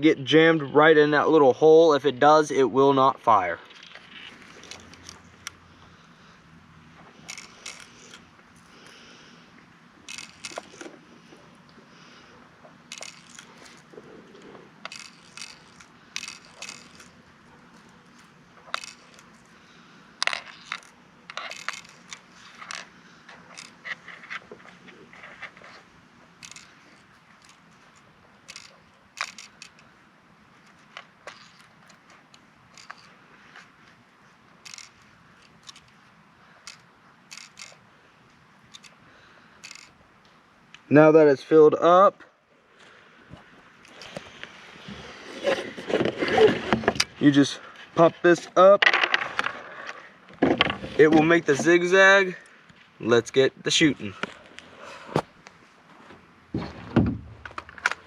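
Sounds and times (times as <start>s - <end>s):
metallic clicks and rattles: 7.2s - 8.2s, 10.1s - 11.0s, 12.9s - 17.2s, 18.6s - 19.5s, 20.2s - 24.4s, 26.4s - 29.9s, 30.6s - 33.2s, 34.6s - 36.0s, 36.6s - 37.8s, 39.6s - 40.0s.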